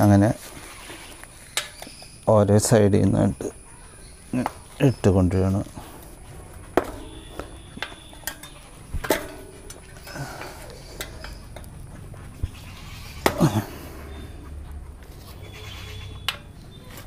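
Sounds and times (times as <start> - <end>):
tyre lever metallic clinks: 6.8 - 10.1.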